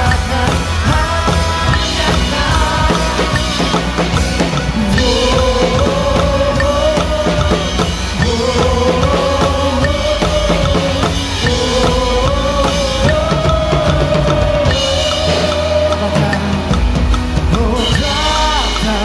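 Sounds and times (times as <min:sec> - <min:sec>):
drum kit beat: 0:00.0 - 0:19.0
held melody line: 0:00.0 - 0:19.0.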